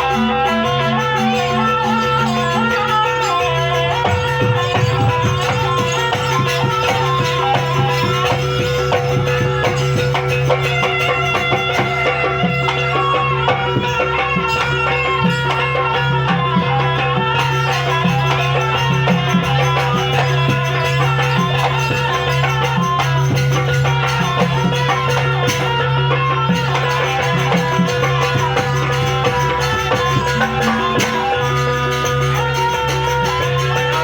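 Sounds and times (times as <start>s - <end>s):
pitched metallic notes: 0.0s - 16.1s
percussion ensemble fast rhythm: 0.0s - 34.0s.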